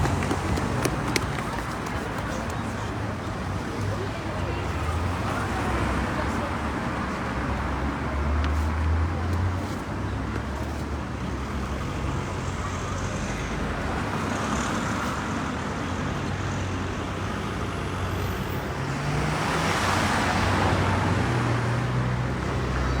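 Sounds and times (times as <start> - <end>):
road traffic rumble: 0.0 - 23.0.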